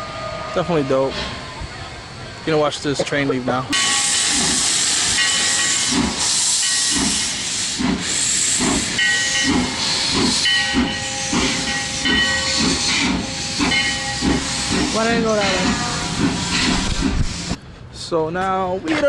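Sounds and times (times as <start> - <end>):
locomotive chuffing: 0.3 - 17.6
locomotive bell ringing: 3.4 - 7.0, 8.9 - 16.9
steam hissing: 3.7 - 17.6.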